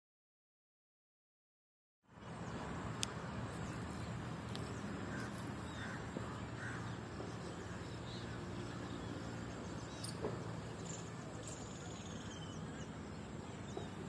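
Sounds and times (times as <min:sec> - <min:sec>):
road traffic rumble: 0:02.0 - 0:14.0
faint bird calls: 0:03.6 - 0:14.0.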